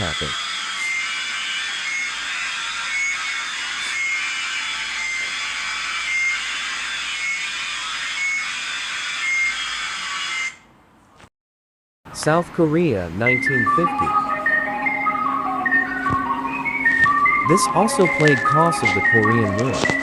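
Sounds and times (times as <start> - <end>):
short high beeps: 13.2 - 20.0.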